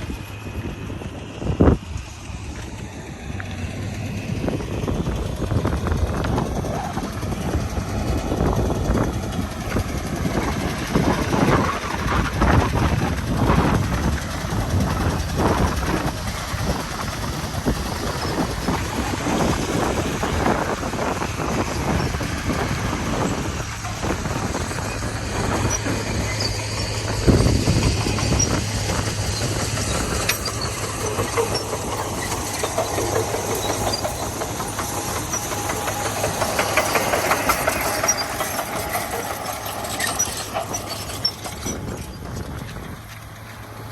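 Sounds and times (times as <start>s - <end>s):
bulldozer diesel engine running: 0.0s - 43.9s
metallic clanks and knocks: 9.1s - 43.6s.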